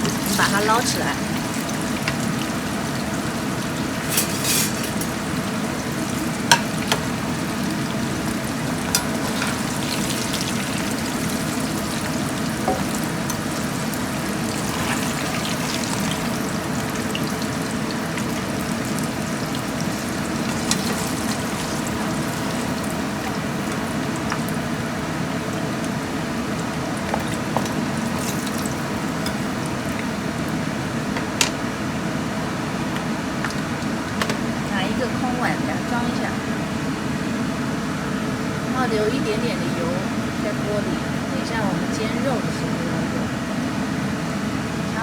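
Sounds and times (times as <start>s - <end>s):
food sizzling in hot oil: 0.0s - 35.4s.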